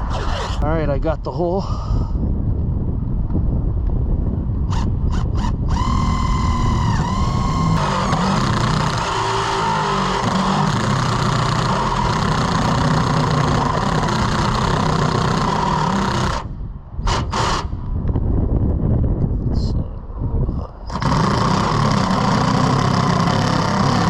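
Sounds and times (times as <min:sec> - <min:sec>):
power tool motor running: 0:04.7 - 0:16.5, 0:17.1 - 0:17.7, 0:20.9 - 0:24.0
short bursts of noise: 0:20.9 - 0:24.0.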